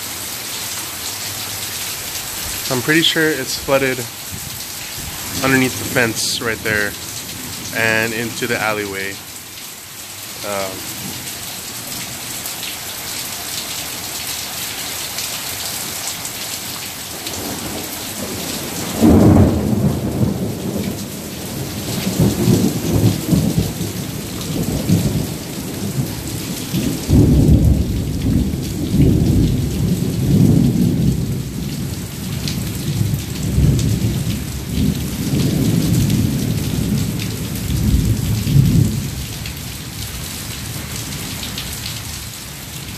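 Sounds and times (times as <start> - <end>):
heavy rain falling: 0.0 - 42.9
rolling thunder: 17.4 - 26.1.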